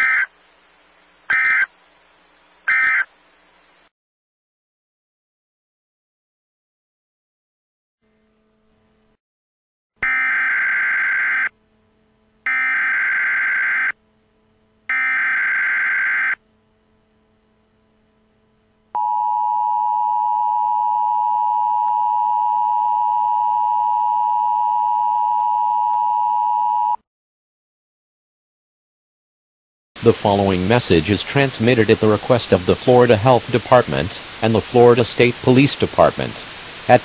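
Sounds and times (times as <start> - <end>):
two-tone attention signal: 19.0 - 27.0.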